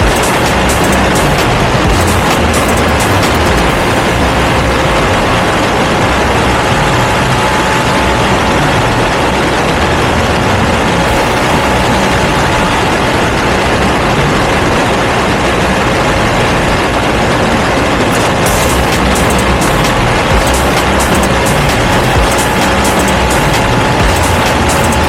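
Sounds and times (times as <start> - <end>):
loud rushing noise: 0.0 - 25.0
motorcycle engine running: 0.0 - 25.0.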